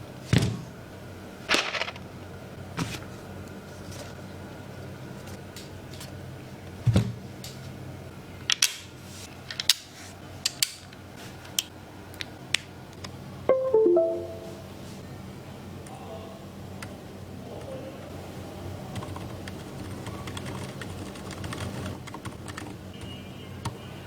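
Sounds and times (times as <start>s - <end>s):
pitched musical notes: 13.5s - 14.8s.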